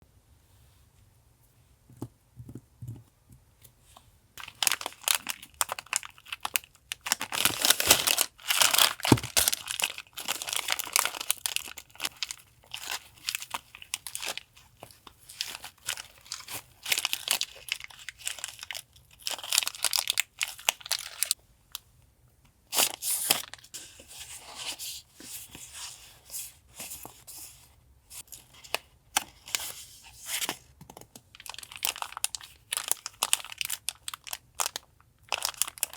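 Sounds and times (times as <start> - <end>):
packaging tearing: 4.4 - 14.5, 15.3 - 21.4
packaging crinkling and rustling: 4.4 - 21.4, 31.3 - 35.9.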